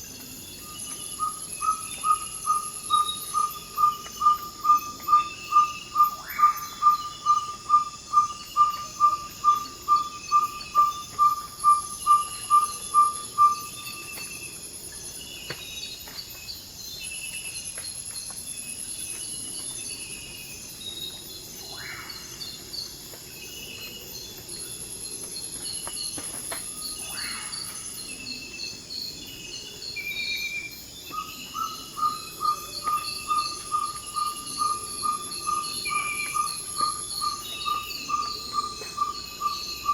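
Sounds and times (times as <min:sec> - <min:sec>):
insects chorus: 0:00.0 - 0:39.9
owl whistled toop calls: 0:01.2 - 0:14.0, 0:30.2 - 0:39.9.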